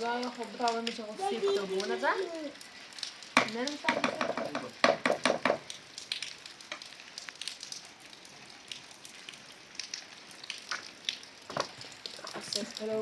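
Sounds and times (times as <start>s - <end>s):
food sizzling in a pan: 0.0s - 5.7s.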